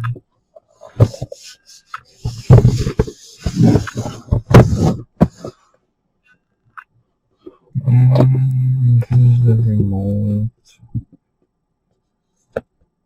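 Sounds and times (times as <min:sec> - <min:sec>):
unpacking thuds and rustles: 0:02.3 - 0:05.6.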